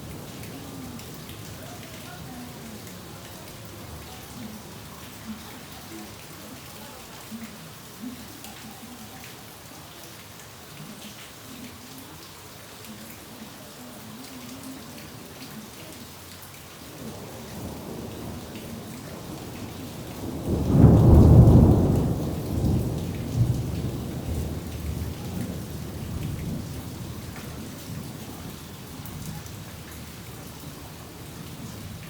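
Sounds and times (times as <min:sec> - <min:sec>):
steady rain falling: 0:00.0 - 0:32.0
thunderclap: 0:17.0 - 0:28.2.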